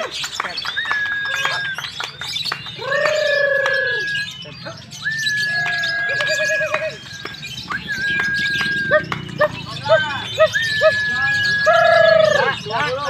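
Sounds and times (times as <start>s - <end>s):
long whistled bird notes: 0.0s - 12.8s
low warbling bird calls: 0.0s - 13.0s
lovebird chattering song: 4.0s - 13.0s.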